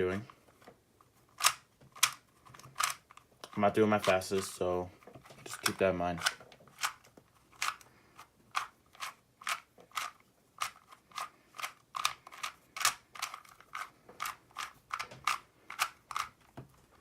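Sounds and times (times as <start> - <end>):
puzzle cube layers clacking: 0.1 - 17.0.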